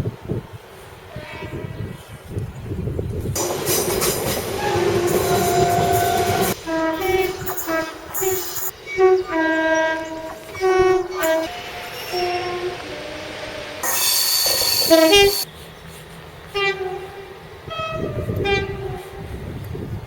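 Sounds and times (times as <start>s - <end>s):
two-tone train horn: 1.1s - 1.9s, 4.5s - 15.5s, 16.6s - 19.3s
train rumbling past: 2.7s - 20.0s.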